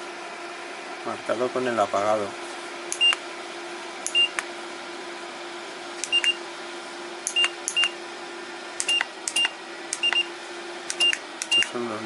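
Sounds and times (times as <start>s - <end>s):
fan humming: 0.0s - 12.0s
button clicks: 6.0s - 6.4s
short high beeps: 6.1s - 6.4s.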